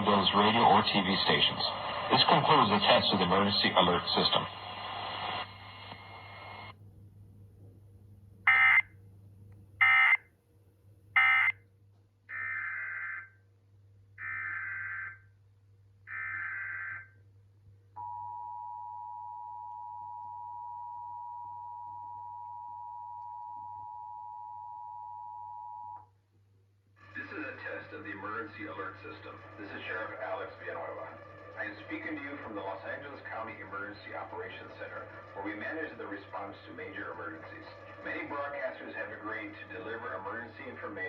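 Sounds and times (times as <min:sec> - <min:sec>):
digital data squawks: 0:08.5 - 0:08.8, 0:09.8 - 0:10.2, 0:11.2 - 0:11.5
quieter data bursts: 0:08.5 - 0:08.8, 0:09.8 - 0:10.2, 0:11.2 - 0:11.5
two-tone attention signal: 0:08.5 - 0:08.8, 0:09.8 - 0:10.2, 0:11.2 - 0:11.6.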